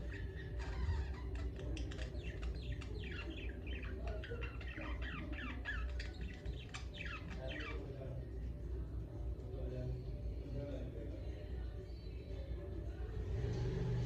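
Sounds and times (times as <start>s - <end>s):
budgerigars chirping: 0.0s - 7.9s.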